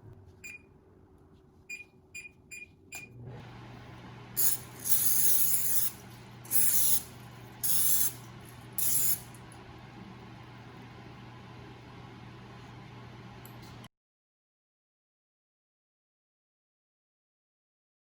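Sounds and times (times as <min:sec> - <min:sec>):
steady low hum: 0:00.0 - 0:13.9.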